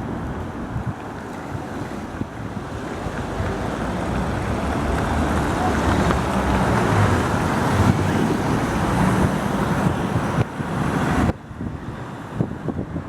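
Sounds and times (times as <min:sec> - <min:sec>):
traffic noise: 0:00.0 - 0:13.0
tram rumbling past: 0:02.2 - 0:11.3.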